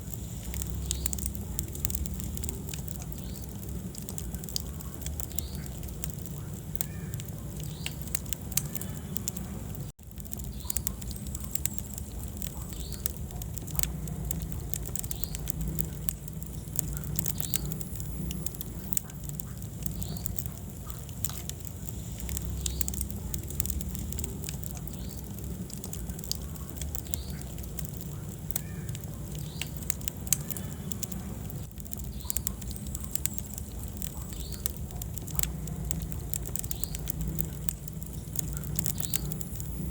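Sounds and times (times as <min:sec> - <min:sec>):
fire low rumble: 0:00.0 - 0:39.9
wood fire crackling and popping: 0:00.0 - 0:39.9.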